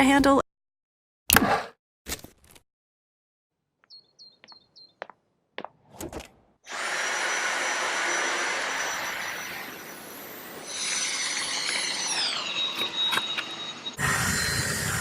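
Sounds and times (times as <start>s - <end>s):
vacuum cleaner running: 6.7s - 15.0s.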